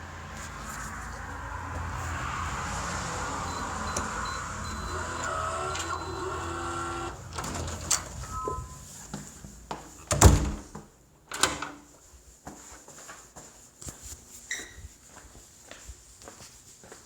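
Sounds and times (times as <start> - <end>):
door thudding shut: 10.0 - 10.8.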